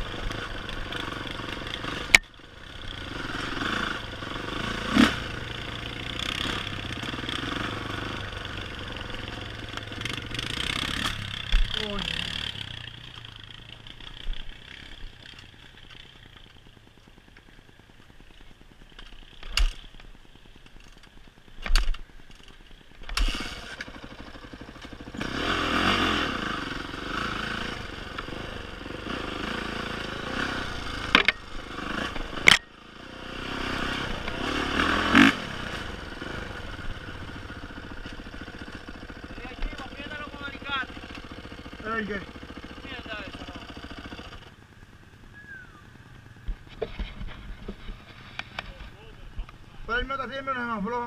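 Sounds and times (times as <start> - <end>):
engine revving: 0.0 - 17.8, 23.0 - 51.0.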